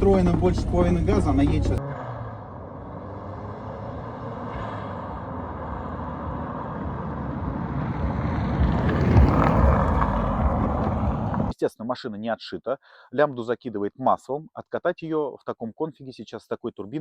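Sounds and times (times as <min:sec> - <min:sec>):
car engine pulling: 0:00.0 - 0:11.5.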